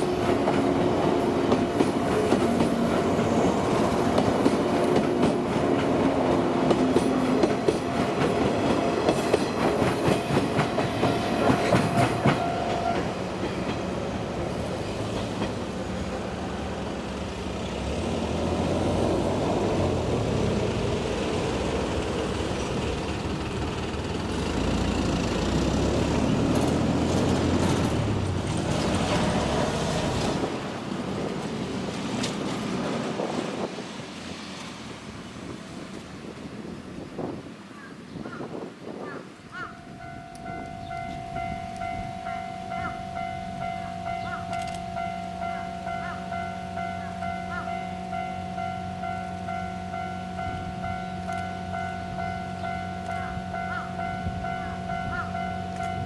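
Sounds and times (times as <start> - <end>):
train wheels clattering over rails: 0.0 - 34.7
low train rumble: 0.0 - 37.8, 38.4 - 56.0.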